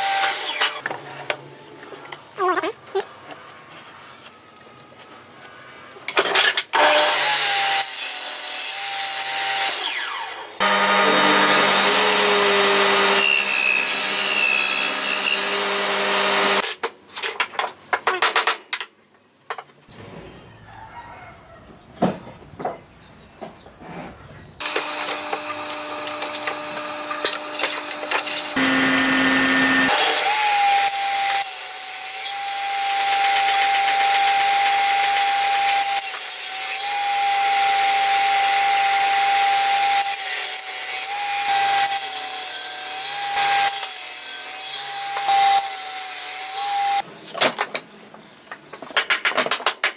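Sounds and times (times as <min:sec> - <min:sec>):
power tools cutting wood: 0:00.0 - 0:01.0, 0:06.7 - 0:16.8, 0:24.6 - 0:47.0
knocks and handling of wood: 0:16.8 - 0:19.9, 0:22.0 - 0:28.5, 0:47.2 - 0:49.9.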